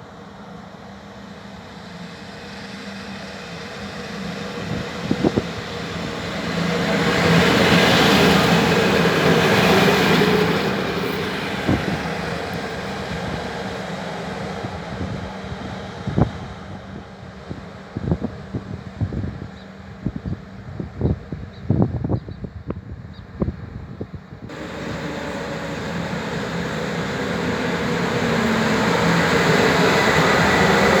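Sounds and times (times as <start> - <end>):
train rumbling on rails: 0.0 - 31.0.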